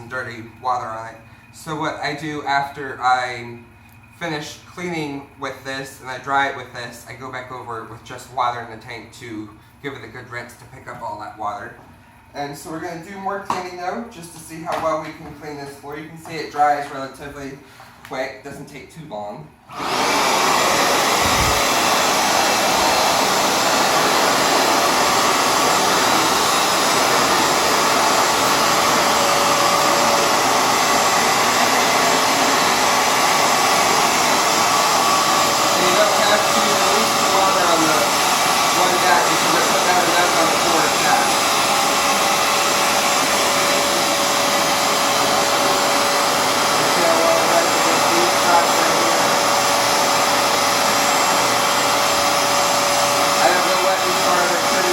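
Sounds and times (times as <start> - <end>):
floor cleaner whirring: 19.7 - 54.9.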